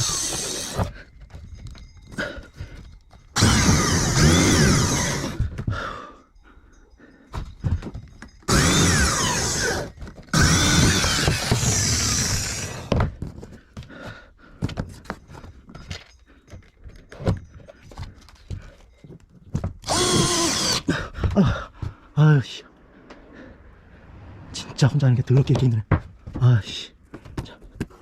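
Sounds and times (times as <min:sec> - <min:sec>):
power drill driving screws: 0:00.0 - 0:00.9, 0:03.4 - 0:05.5, 0:08.5 - 0:13.0, 0:19.8 - 0:20.9.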